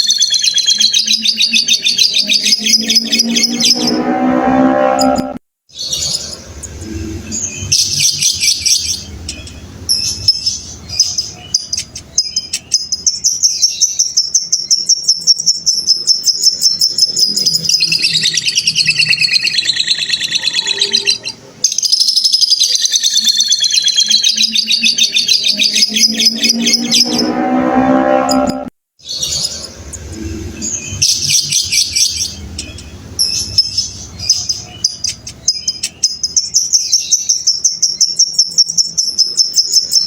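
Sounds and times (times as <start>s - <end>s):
fast high bird chatter: 0.0s - 3.8s, 5.8s - 27.1s, 29.1s - 40.0s
bird chirps and clicks: 7.6s - 26.1s, 31.0s - 40.0s.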